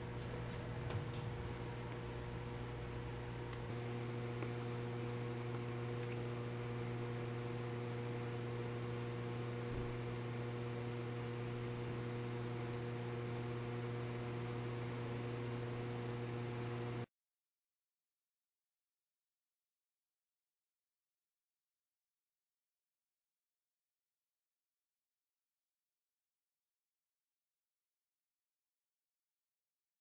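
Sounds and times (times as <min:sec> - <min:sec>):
electrical mains hum: 0:00.0 - 0:17.1.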